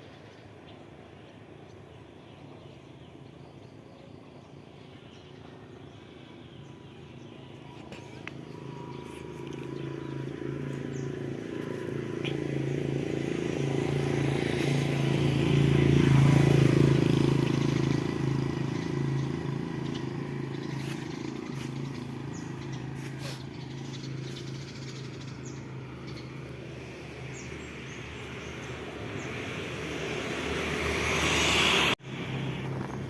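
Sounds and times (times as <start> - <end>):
vehicle engine running: 6.6 - 33.0.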